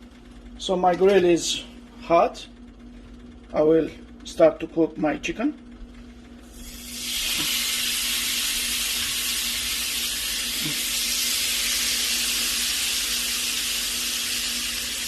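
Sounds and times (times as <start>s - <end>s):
chicken sizzling on a grill: 6.5s - 15.0s.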